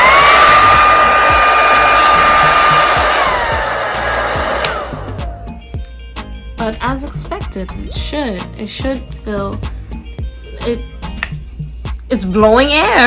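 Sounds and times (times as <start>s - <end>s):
hair dryer running: 0.0s - 5.5s
dryer motor winding down: 0.0s - 5.6s
switch click: 4.6s - 5.2s.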